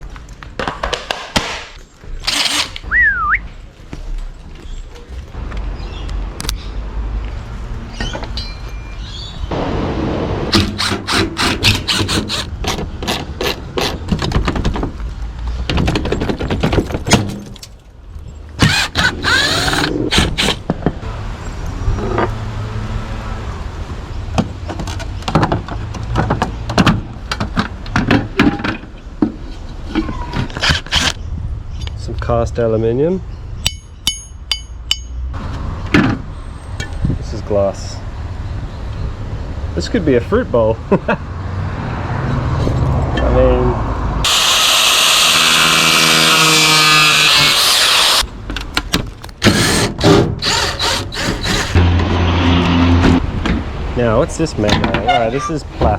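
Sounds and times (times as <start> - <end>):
hard parts knocking and clicking: 10.5 - 15.0, 15.6 - 17.8, 24.4 - 31.2, 48.4 - 53.7
handheld power tool running: 18.6 - 20.6, 44.3 - 48.2, 49.4 - 51.9.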